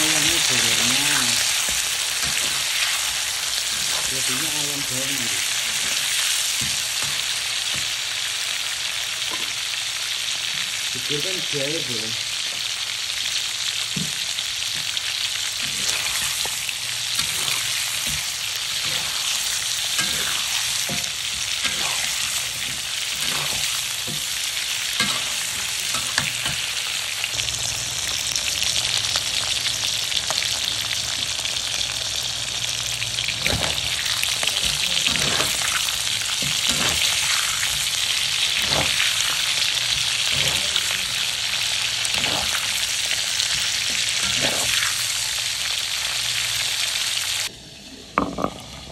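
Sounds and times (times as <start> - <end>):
chicken sizzling in hot oil: 0.0 - 47.5.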